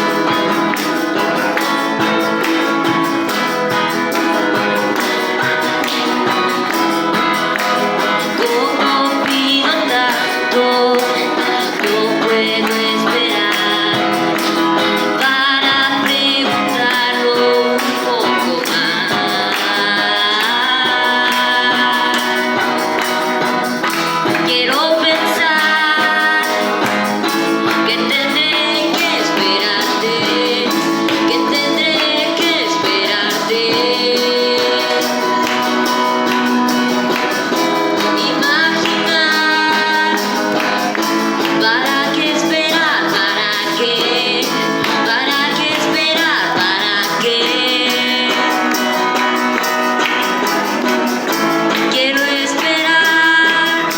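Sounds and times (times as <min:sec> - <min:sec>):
person singing: 0:00.0 - 0:53.9
plucked guitar: 0:00.0 - 0:53.9.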